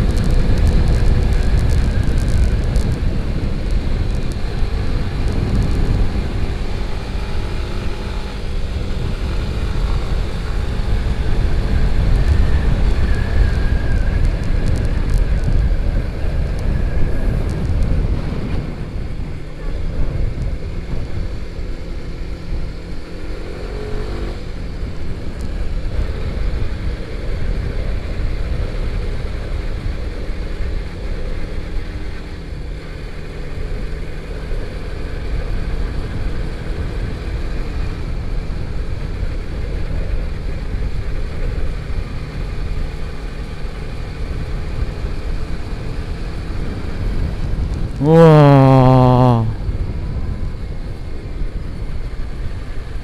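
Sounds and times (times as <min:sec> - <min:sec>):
wind rumble on microphone: 0:00.0 - 0:48.0, 0:49.5 - 0:53.0.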